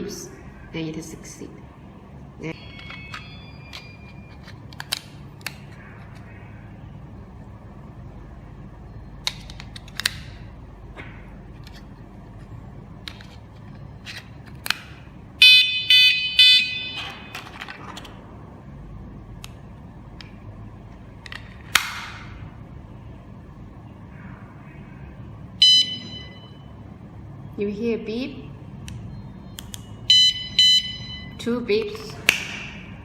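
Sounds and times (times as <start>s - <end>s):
alarm unit electronic beeps: 15.4s - 17.3s, 25.6s - 26.8s, 29.1s - 31.5s.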